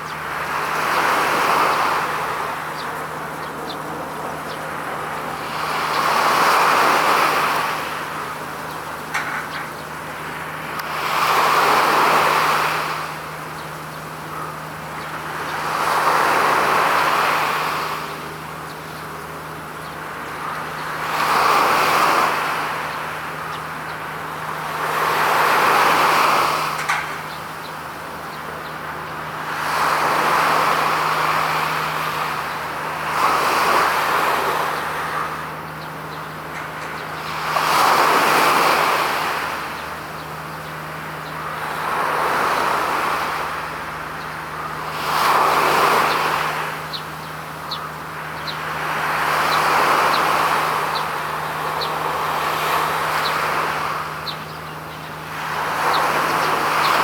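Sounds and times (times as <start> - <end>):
steady low hum: 0.0 - 57.0
small waves washing on shore: 28.8 - 35.7, 36.4 - 57.0.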